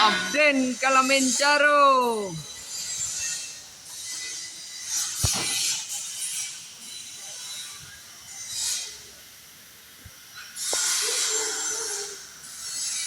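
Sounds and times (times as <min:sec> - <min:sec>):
air hissing: 0:08.5 - 0:13.0.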